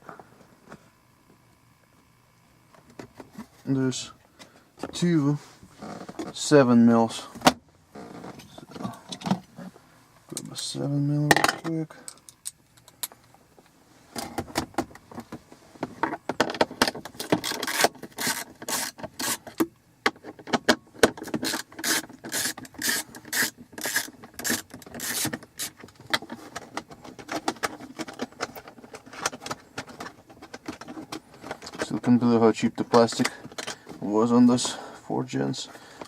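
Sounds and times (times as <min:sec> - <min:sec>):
socket ratchet clicking: 0:21.2 - 0:25.8.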